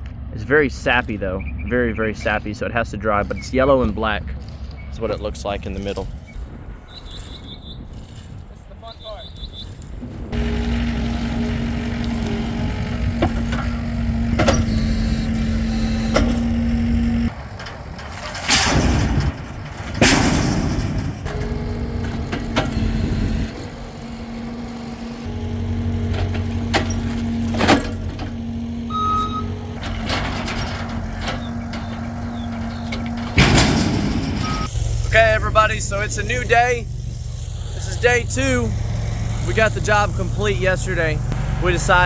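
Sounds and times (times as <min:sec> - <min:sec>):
heavy vehicle engine running: 0:10.2 - 0:42.0.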